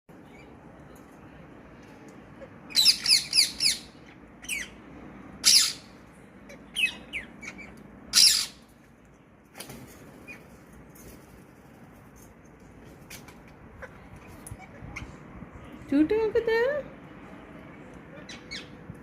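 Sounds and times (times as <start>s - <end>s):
parrot squawking: 2.7s - 4.8s, 5.4s - 8.6s, 18.1s - 18.7s.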